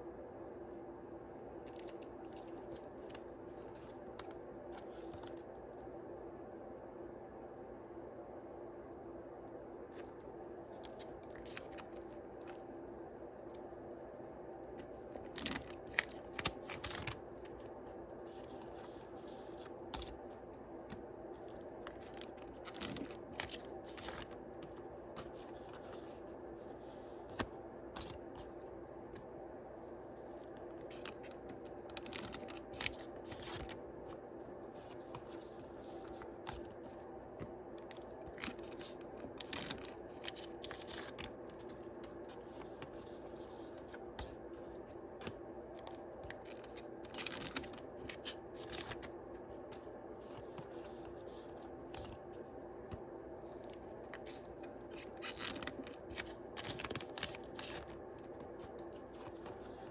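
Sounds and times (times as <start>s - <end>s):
steady low hum: 0.0s - 59.9s
foil wrappers crinkling: 15.0s - 17.6s, 21.4s - 26.0s, 30.8s - 33.8s, 37.9s - 44.4s, 45.8s - 49.1s, 53.7s - 58.0s
trading cards handled: 30.4s - 52.3s, 53.6s - 59.9s.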